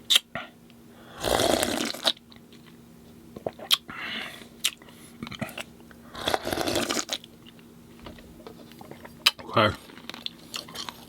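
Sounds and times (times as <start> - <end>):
close eating sounds: 3.4 - 11.0.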